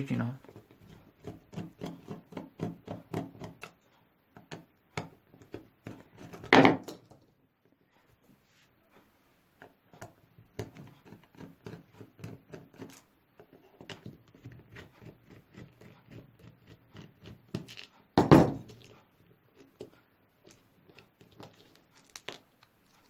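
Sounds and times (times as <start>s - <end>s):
loud knock: 18.2s - 18.7s
clicks and rattles of small parts: 19.7s - 23.0s.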